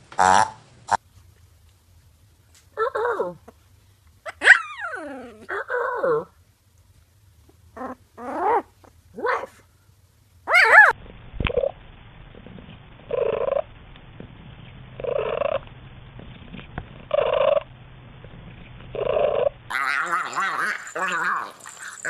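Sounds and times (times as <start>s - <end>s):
animal whining: 4.3s - 6.3s, 7.8s - 9.6s, 13.1s - 13.7s, 15.0s - 15.6s, 17.0s - 17.7s, 18.9s - 22.0s.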